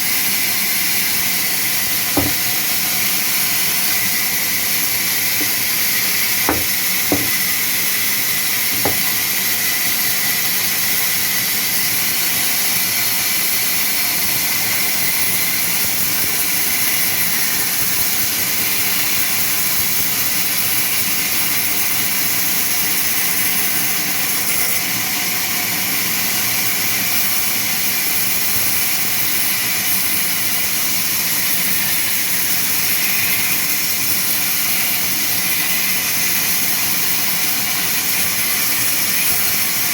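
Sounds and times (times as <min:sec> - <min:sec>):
sawmill saw running: 0:00.0 - 0:18.6
short knocks: 0:02.2 - 0:02.5, 0:06.5 - 0:07.4, 0:08.8 - 0:09.2.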